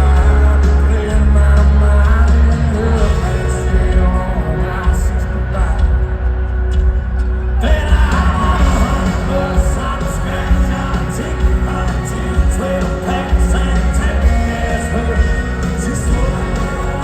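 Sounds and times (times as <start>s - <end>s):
person singing: 0.0s - 6.4s, 7.6s - 17.0s
heavy bass: 0.0s - 17.0s
drum beat: 7.7s - 17.0s.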